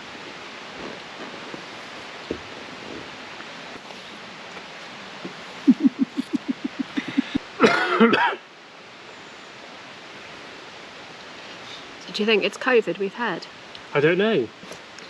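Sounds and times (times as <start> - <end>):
person coughing: 6.1 - 8.4.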